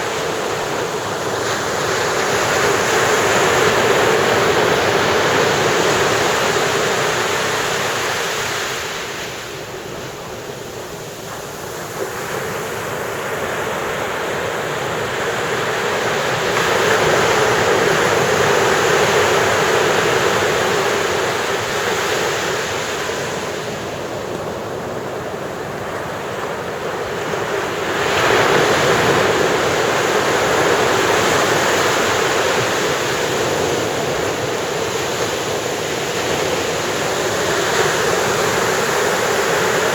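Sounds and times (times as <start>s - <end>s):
ocean surf breaking on beach: 0.0s - 39.9s.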